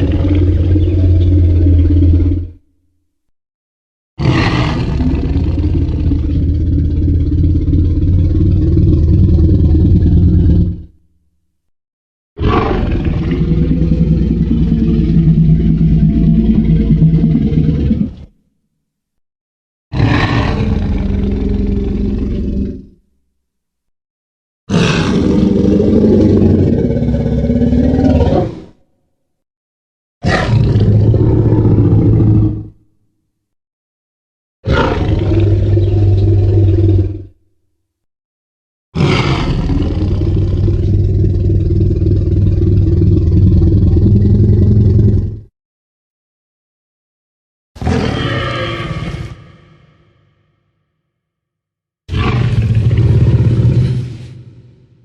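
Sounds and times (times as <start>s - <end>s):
low rumbling dinosaur roar: 0.0s - 2.6s, 4.2s - 11.0s, 12.4s - 18.3s, 19.9s - 23.0s, 24.7s - 28.8s, 30.2s - 32.8s, 34.6s - 37.4s, 39.0s - 45.5s, 47.8s - 50.4s, 52.1s - 55.0s.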